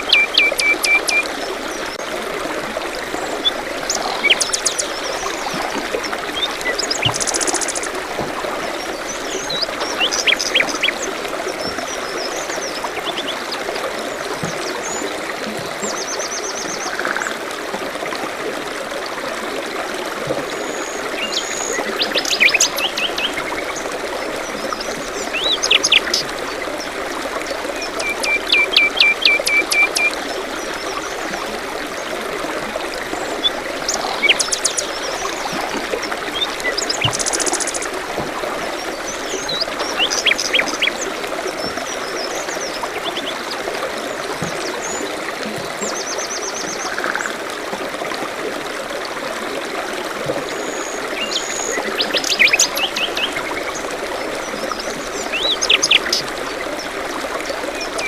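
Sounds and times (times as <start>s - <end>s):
birds chirping: 0.0s - 2.0s, 3.2s - 8.0s, 8.6s - 13.6s, 20.7s - 31.4s, 33.1s - 43.5s
stream trickling: 0.0s - 58.0s.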